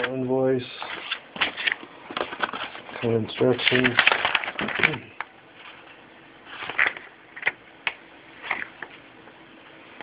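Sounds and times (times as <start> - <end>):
box packaging rustling: 0.8 - 5.9, 6.5 - 7.6
packaging clicks: 3.6 - 5.3.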